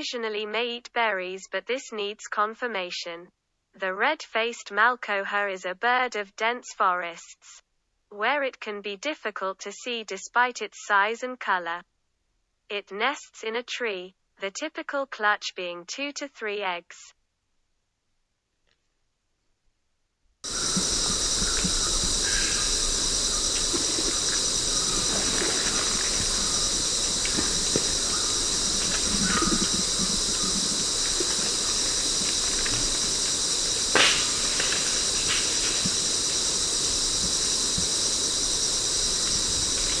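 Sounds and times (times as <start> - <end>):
high-pitched insect chorus: 20.4 - 40.0
faint chirps: 20.5 - 40.0
sharp click: 33.9 - 35.8.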